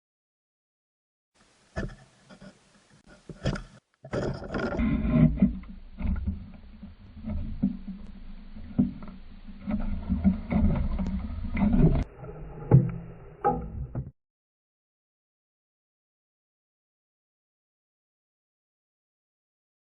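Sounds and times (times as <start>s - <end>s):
low rumbling water: 4.5s - 14.1s.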